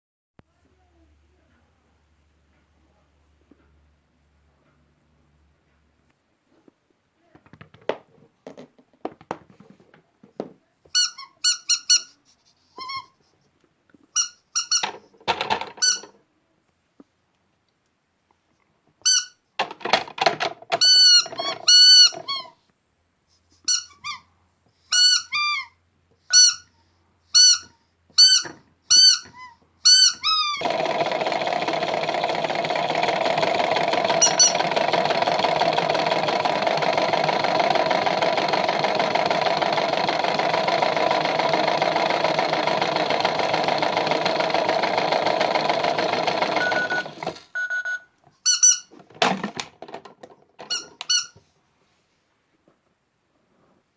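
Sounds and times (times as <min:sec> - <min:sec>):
toy motor humming: 0:20.8 - 0:22.5, 0:29.9 - 0:47.5.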